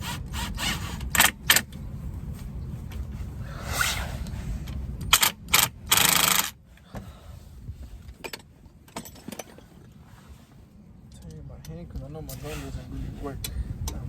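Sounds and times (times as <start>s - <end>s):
light metal clicks: 11.1s - 12.4s.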